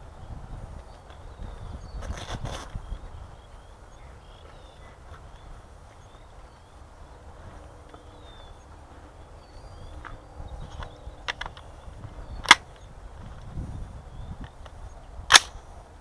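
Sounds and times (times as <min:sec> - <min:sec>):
low wind rumble: 0:00.0 - 0:16.0
small birds chirping: 0:00.0 - 0:16.0.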